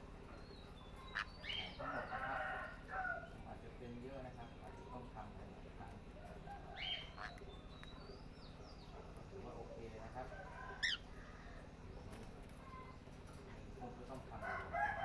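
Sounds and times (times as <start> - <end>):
parrot calls: 6.8 - 7.4, 10.8 - 11.2.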